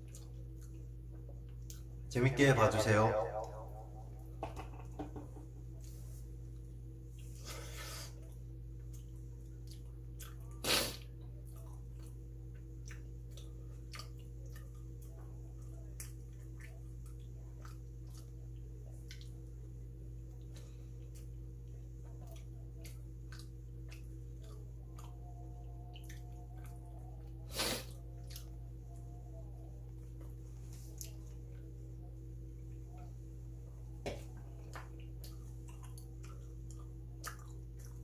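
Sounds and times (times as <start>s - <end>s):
person chewing: 0.0s - 1.9s, 5.8s - 19.5s, 20.2s - 29.1s, 29.9s - 31.7s, 34.3s - 38.0s
low electrical hum: 0.0s - 38.0s.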